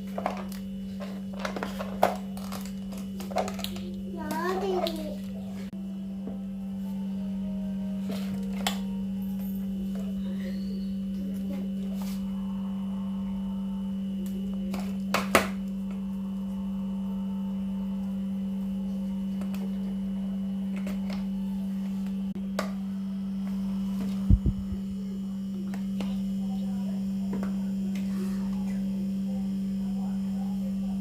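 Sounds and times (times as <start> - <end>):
electric fan motor hum: 0.0 - 31.0.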